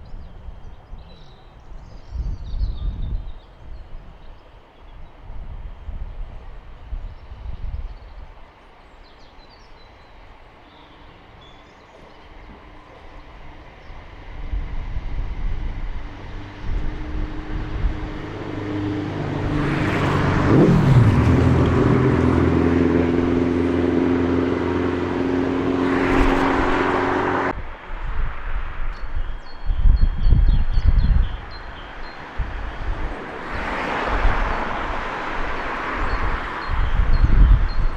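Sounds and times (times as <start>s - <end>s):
passing train motor hum: 10.2s - 28.4s.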